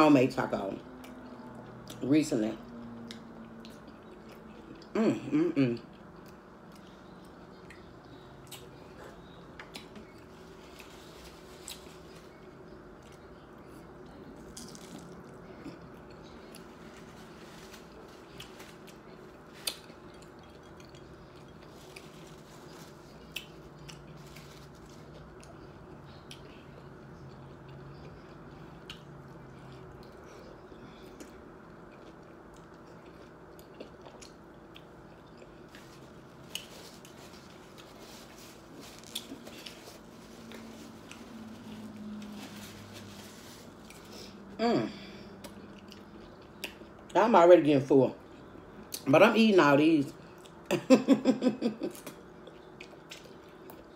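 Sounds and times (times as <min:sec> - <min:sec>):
faint steady hum: 0:00.0 - 0:53.9
chewing and biting: 0:05.9 - 0:44.1.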